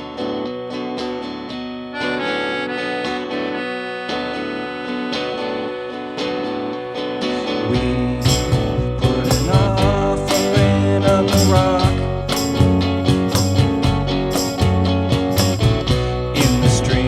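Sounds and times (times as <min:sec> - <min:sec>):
instrumental music with chords: 0:00.0 - 0:17.0.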